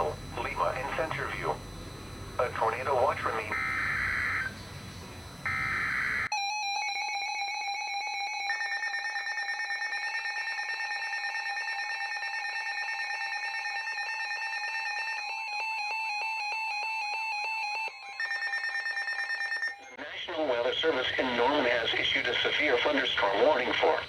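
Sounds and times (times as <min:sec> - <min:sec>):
warbling data burst: 0:00.0 - 0:06.3
two-tone attention alarm: 0:00.0 - 0:24.0.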